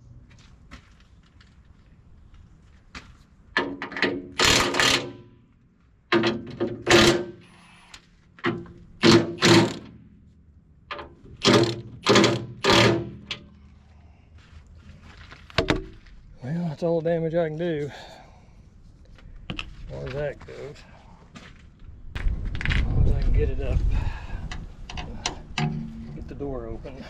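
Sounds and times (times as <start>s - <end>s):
metal knocks and clanks: 3.6s - 5.3s, 6.1s - 7.4s, 8.4s - 10.1s, 10.9s - 13.5s, 24.9s - 26.4s.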